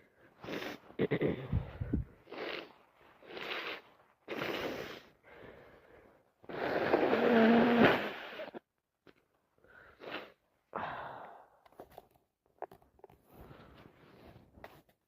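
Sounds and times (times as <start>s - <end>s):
person blowing nose: 0.4s - 5.1s, 6.4s - 8.6s, 9.9s - 10.4s
person sniffing: 0.4s - 5.2s, 9.9s - 10.4s.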